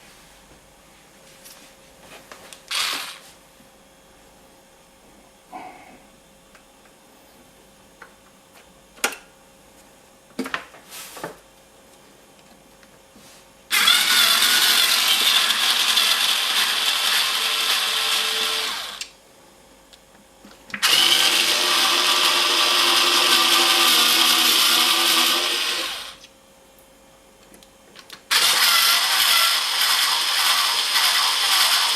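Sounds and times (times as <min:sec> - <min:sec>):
small power tool running: 0:02.7 - 0:03.2, 0:13.7 - 0:19.1, 0:20.8 - 0:26.2, 0:28.3 - 0:31.9.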